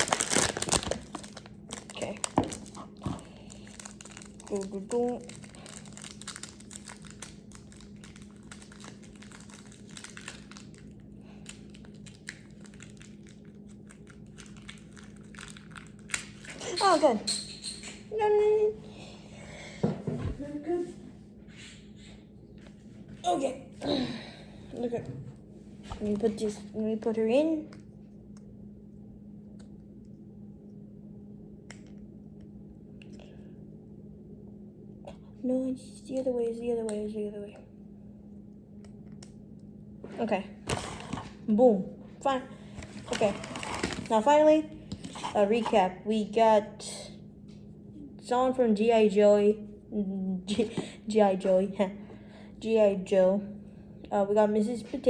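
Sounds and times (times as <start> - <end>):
packaging rustling: 0.0 - 16.6, 42.6 - 44.3
steady low hum: 0.0 - 55.0.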